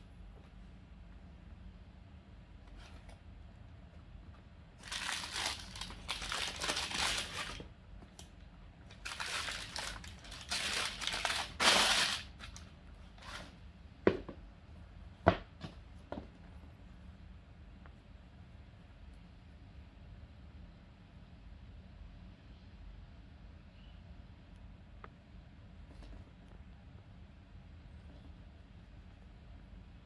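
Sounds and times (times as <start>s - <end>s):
paper packaging crinkling: 4.8s - 13.6s.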